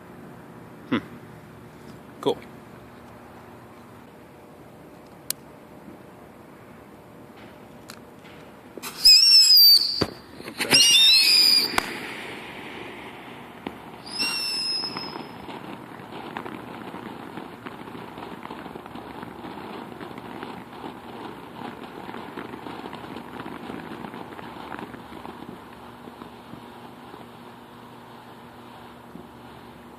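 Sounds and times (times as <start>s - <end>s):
firework crackling: 7.3s - 29.9s
firework bursts: 8.2s - 29.9s
firework whistles: 8.8s - 29.9s.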